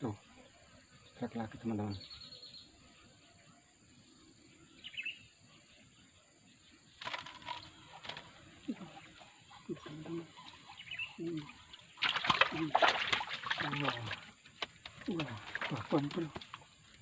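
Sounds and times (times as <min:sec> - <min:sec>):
bird chirp: 0:00.3 - 0:12.7
fish splashing in water: 0:07.0 - 0:17.0.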